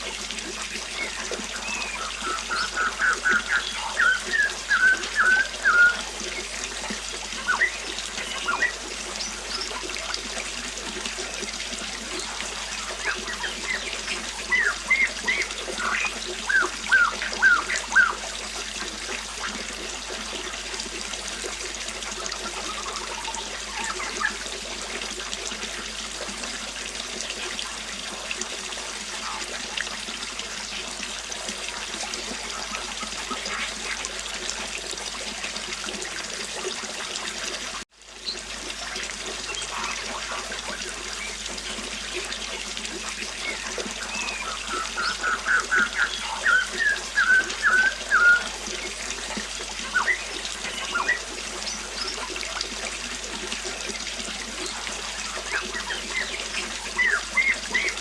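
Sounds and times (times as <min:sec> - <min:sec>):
river flowing: 0:00.0 - 0:37.2, 0:38.2 - 0:58.0
birds chirping: 0:00.7 - 0:09.9, 0:11.3 - 0:18.3, 0:29.1 - 0:29.6, 0:39.4 - 0:41.8, 0:43.3 - 0:52.4, 0:54.6 - 0:58.0.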